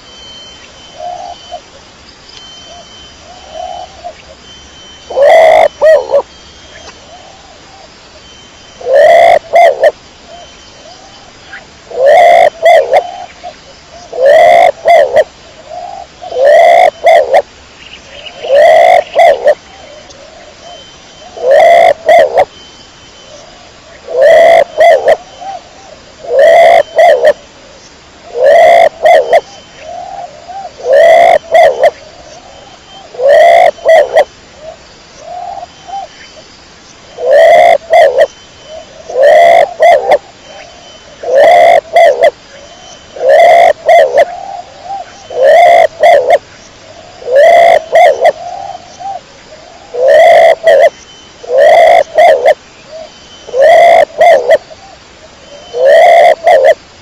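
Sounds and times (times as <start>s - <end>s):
pigeon cooing: 5.1s - 6.3s, 8.8s - 10.0s, 11.9s - 13.3s, 14.1s - 17.5s, 18.4s - 22.5s, 24.0s - 25.6s, 26.2s - 27.4s, 28.3s - 32.0s, 33.1s - 34.3s, 37.2s - 38.3s, 39.1s - 42.4s, 43.1s - 46.4s, 47.1s - 49.2s, 49.8s - 52.6s, 53.5s - 54.6s, 55.6s - 56.8s.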